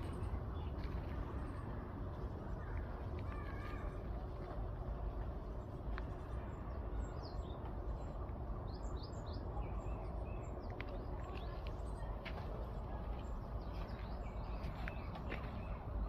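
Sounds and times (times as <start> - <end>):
small birds chirping: 5.0 - 16.0.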